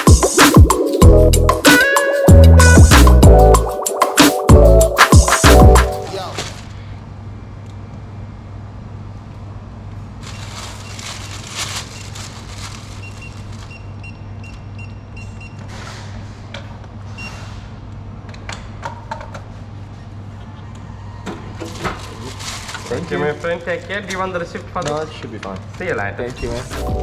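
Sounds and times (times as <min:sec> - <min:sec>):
rustling: 0:10.2 - 0:13.8, 0:21.7 - 0:23.2.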